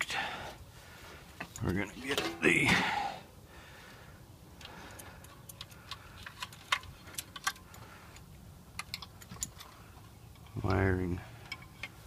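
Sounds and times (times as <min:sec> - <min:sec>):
low steady hum: 0:00.1 - 0:12.0
clicks of handling wiring: 0:04.6 - 0:12.0.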